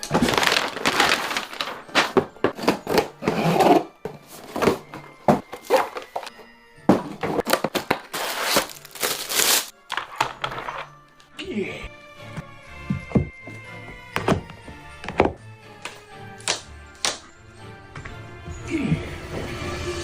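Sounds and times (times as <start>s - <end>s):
music: 0.0s - 20.0s.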